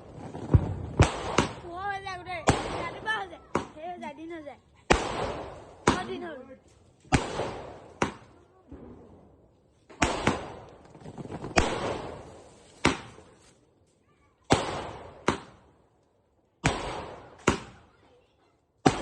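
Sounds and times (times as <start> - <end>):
fireworks bangs: 0.0 - 4.3, 4.9 - 6.4, 7.0 - 13.4, 14.4 - 15.7, 16.6 - 18.1.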